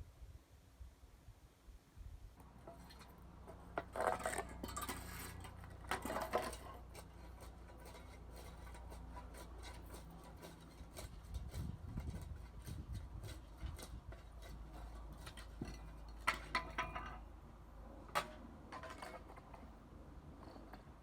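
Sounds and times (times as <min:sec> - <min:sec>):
metal tools clattering and scraping: 0:02.4 - 0:17.3.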